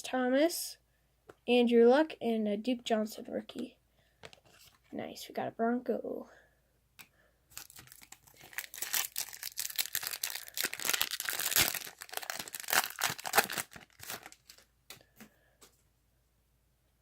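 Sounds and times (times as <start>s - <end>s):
wrapper tearing and crinkling: 7.5s - 14.7s.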